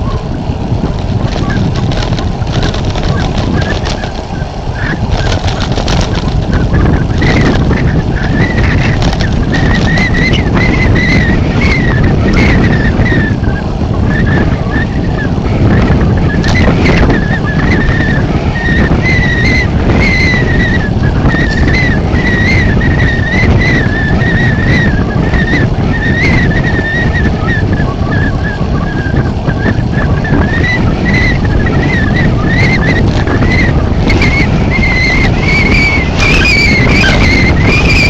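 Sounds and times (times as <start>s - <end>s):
wind and road noise rumble: 0.0s - 38.0s
high wavering whistle: 16.3s - 38.0s.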